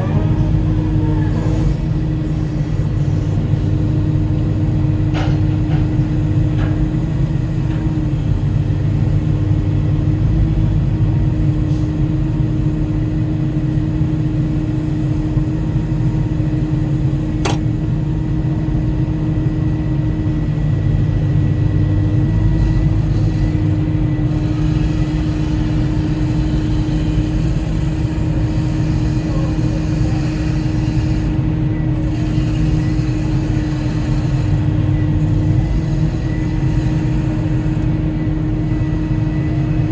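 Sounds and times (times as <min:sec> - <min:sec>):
excavator diesel engine drone: 0:00.0 - 0:39.9
sharp click: 0:17.4 - 0:17.7.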